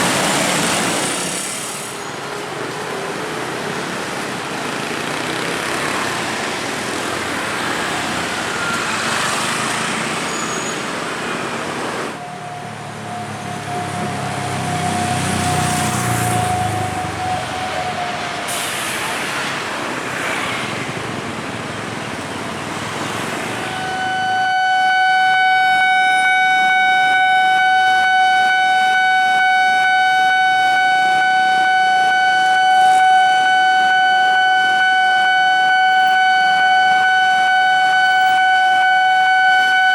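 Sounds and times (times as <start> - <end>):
train wheels on rails: 0.0 - 12.2
train horn long blast: 23.4 - 39.9.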